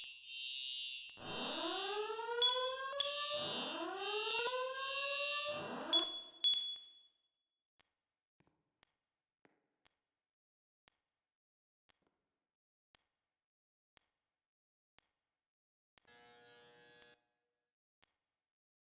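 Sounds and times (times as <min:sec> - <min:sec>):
rising whoop alarm tone: 0:01.2 - 0:06.1
high pulsing alarm tone: 0:01.2 - 0:06.4.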